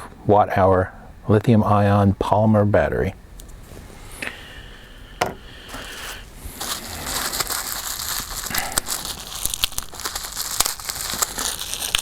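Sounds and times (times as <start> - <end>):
plastic packaging crinkling: 5.7 - 12.0.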